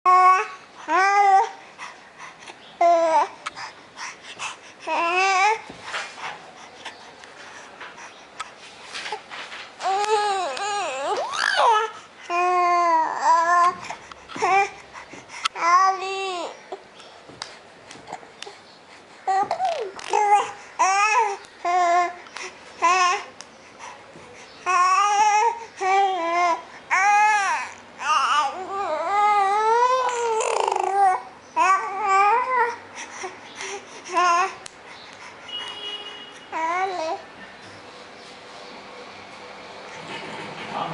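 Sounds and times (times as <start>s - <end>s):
baby babbling: 2.8s - 3.4s, 4.8s - 5.6s, 9.8s - 14.8s, 15.5s - 16.7s, 19.3s - 22.2s, 24.7s - 32.8s, 34.1s - 34.7s, 36.5s - 37.2s
baby breathy noises: 9.8s - 16.9s, 18.0s - 27.0s.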